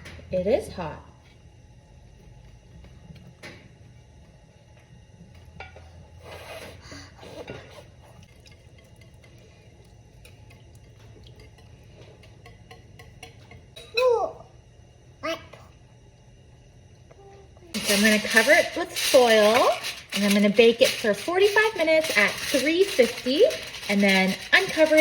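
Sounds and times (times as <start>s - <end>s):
dishes and utensils clinking: 10.2s - 14.1s, 17.8s - 25.0s
rustling and pouring: 17.8s - 25.0s.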